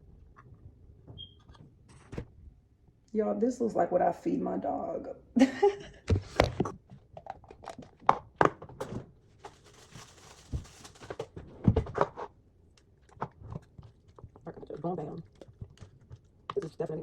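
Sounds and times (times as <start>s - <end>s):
soft rustle: 9.3s - 11.3s.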